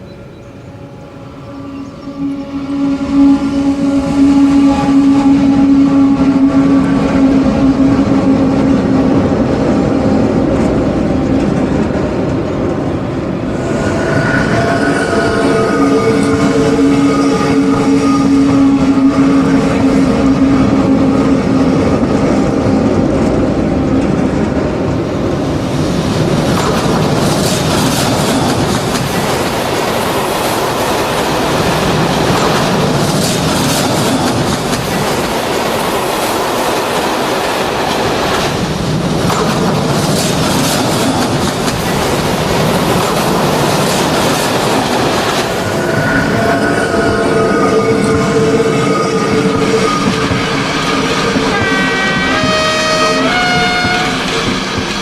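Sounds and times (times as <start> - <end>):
locomotive hum: 0.0 - 55.0
train wheels clattering over rail joints: 21.8 - 55.0.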